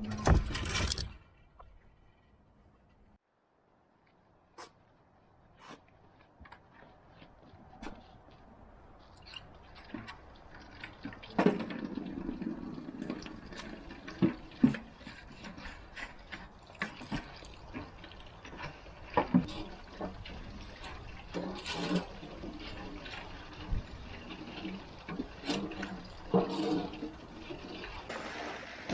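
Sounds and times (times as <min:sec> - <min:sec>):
knocks and clatter of handling: 0:00.0 - 0:02.1
water pouring into a container: 0:08.6 - 0:28.9.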